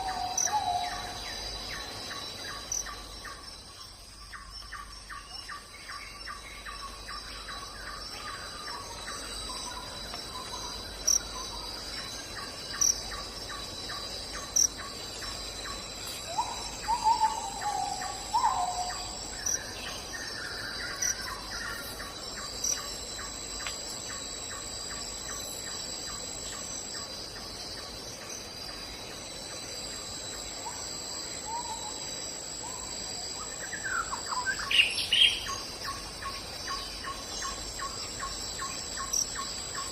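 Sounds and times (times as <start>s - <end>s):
insects chorus: 0.0s - 39.9s
bird calls: 13.9s - 23.3s.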